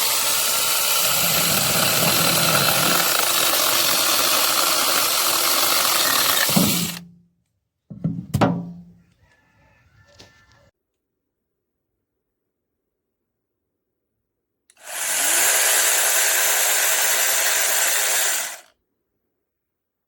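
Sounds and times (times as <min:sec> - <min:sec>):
battery chainsaw running: 0:00.0 - 0:07.0, 0:14.7 - 0:18.7.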